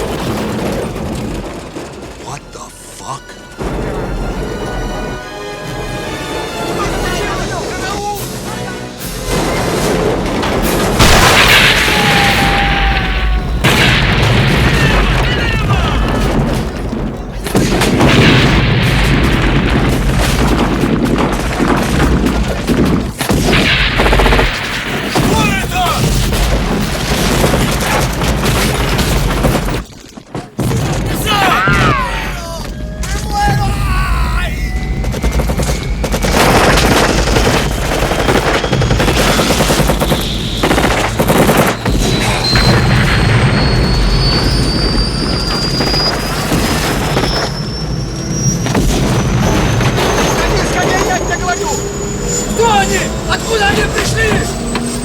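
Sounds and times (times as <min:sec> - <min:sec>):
rapid machine-gun fire: 0:00.0 - 0:02.2, 0:09.3 - 0:13.0, 0:13.6 - 0:29.8, 0:34.8 - 0:47.5
music: 0:02.2 - 0:11.0
heavy booms and gunshot impacts: 0:09.1 - 0:29.8, 0:30.6 - 0:32.3, 0:34.6 - 0:51.3.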